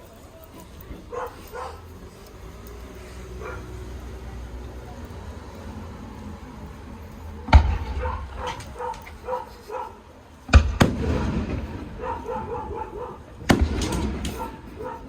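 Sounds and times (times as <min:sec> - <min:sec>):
dog barking: 0:01.1 - 0:01.9, 0:03.3 - 0:03.9, 0:07.8 - 0:10.0, 0:11.9 - 0:15.0
fireworks booming: 0:07.5 - 0:08.8, 0:10.5 - 0:12.2, 0:13.4 - 0:14.8.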